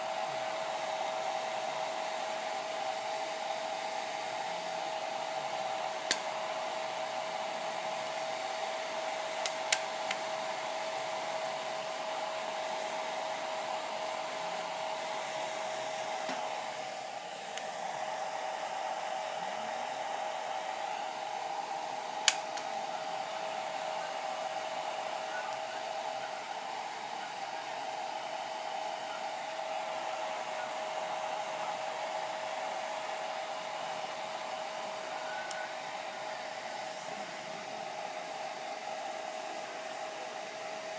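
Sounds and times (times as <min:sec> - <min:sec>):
hair dryer running: 0:00.0 - 0:40.9
sharp clicks: 0:22.2 - 0:22.7.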